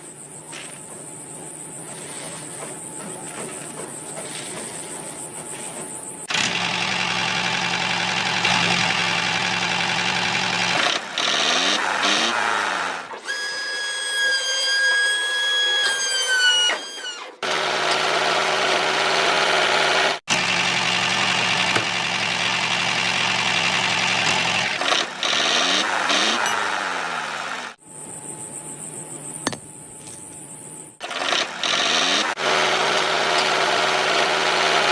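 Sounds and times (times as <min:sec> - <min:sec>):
small motor running: 0:06.3 - 0:12.4, 0:31.0 - 0:34.9
high steady whine: 0:27.8 - 0:31.0.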